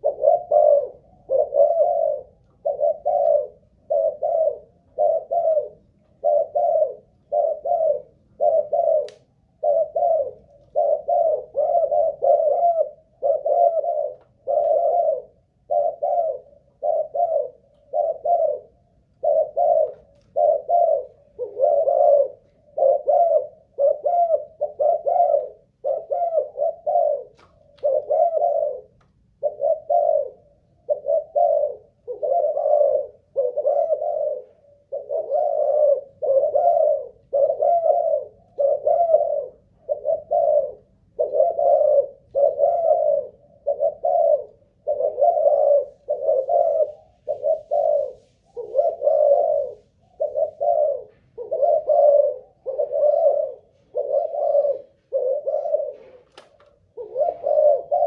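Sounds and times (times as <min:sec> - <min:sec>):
dove cooing: 0:00.0 - 0:58.0.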